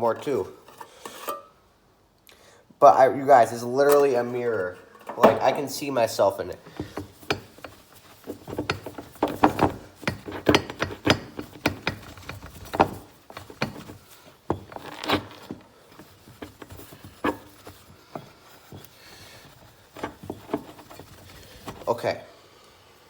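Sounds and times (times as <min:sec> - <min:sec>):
rag wiping metal: 0:06.6 - 0:22.1
metal part knocking and clicking: 0:06.8 - 0:13.9.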